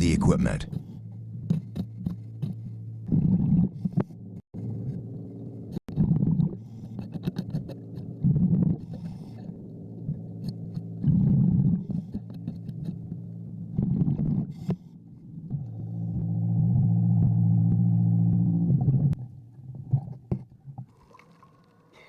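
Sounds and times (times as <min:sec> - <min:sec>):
scraper scraping barnacles underwater: 0:01.5 - 0:16.0
steady low hum: 0:08.1 - 0:19.6.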